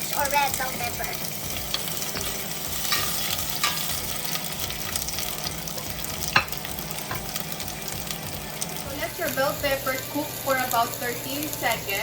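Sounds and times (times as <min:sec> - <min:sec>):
peppers sizzling in oil: 0:00.0 - 0:12.0
utensil clinking against pot: 0:01.7 - 0:04.0, 0:06.2 - 0:07.3.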